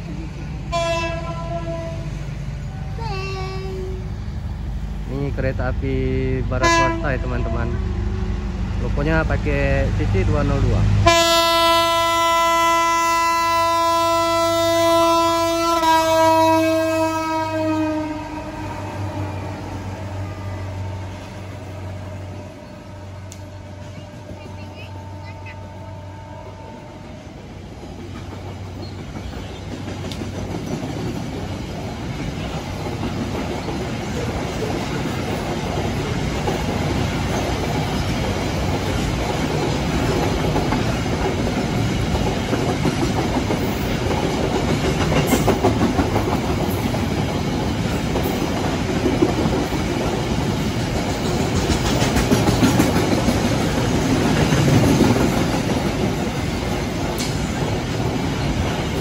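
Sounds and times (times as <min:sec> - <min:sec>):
diesel locomotive rumble: 0:00.0 - 0:59.0
wheels clacking over rail joints: 0:27.8 - 0:59.0.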